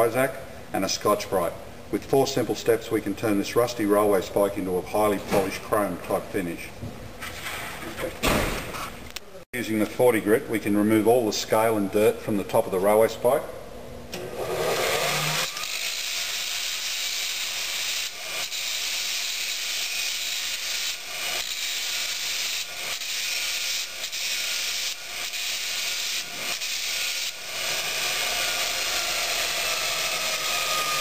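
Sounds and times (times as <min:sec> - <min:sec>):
belt grinder grinding steel: 0:14.6 - 0:31.0.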